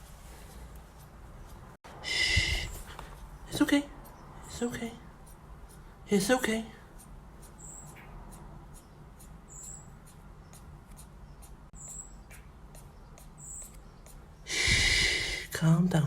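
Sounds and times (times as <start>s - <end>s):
small bird cheeping: 7.5s - 15.3s.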